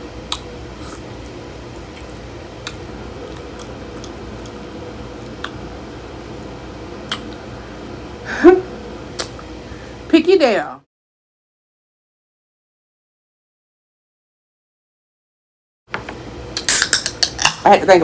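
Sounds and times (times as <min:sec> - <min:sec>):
low room hum: 0:00.0 - 0:10.9, 0:15.9 - 0:18.0.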